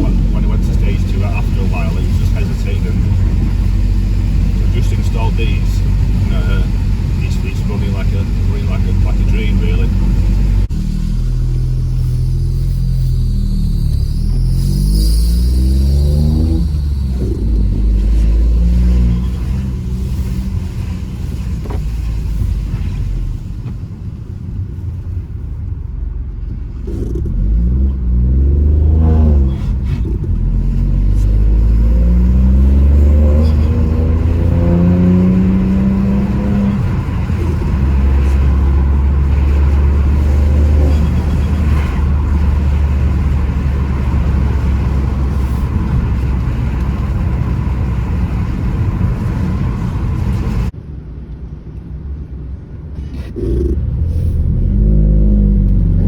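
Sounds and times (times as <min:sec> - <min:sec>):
car engine accelerating hard: 0:00.0 - 0:23.8, 0:26.2 - 0:50.8, 0:52.3 - 0:56.0.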